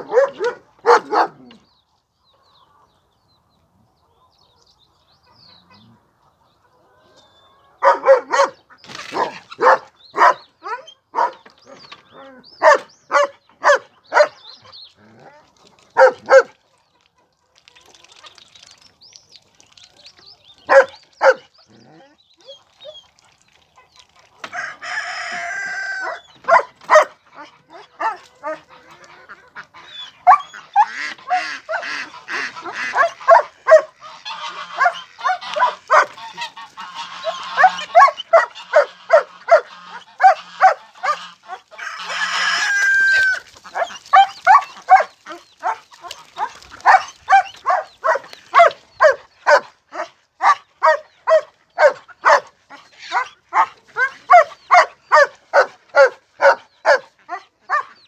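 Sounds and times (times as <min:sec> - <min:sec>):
poultry calling: 0:24.0 - 0:49.7.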